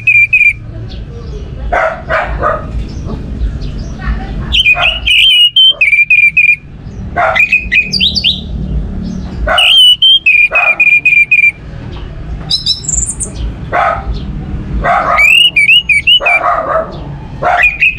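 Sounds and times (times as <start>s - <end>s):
thrush singing whistled phrases: 0.0s - 0.7s, 4.5s - 6.7s, 7.3s - 8.5s, 9.6s - 11.6s, 12.5s - 13.4s, 15.2s - 16.4s, 17.6s - 17.9s
bird scratchy chattering: 4.5s - 6.6s, 12.5s - 13.4s, 15.2s - 16.4s.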